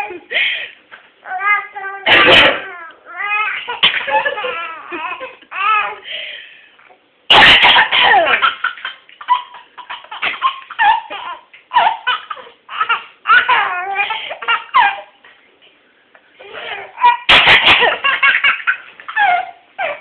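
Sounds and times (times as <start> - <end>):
baby laughing: 1.3 - 6.0, 7.9 - 15.2, 16.4 - 20.0
woman coughing: 2.1 - 2.8, 7.3 - 8.6, 17.2 - 18.1.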